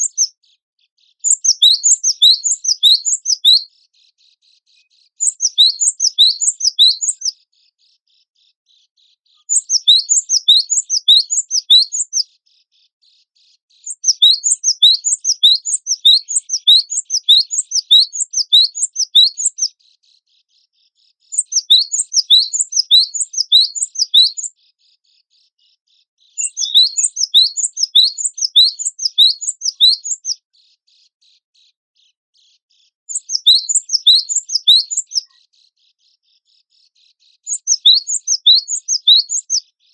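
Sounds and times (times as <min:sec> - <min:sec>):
bird high whistled song: 0:00.0 - 0:00.4, 0:01.2 - 0:03.7, 0:05.2 - 0:07.4, 0:09.4 - 0:12.3, 0:13.8 - 0:19.8, 0:21.3 - 0:24.6, 0:26.4 - 0:30.4, 0:33.1 - 0:35.4, 0:37.4 - 0:39.6.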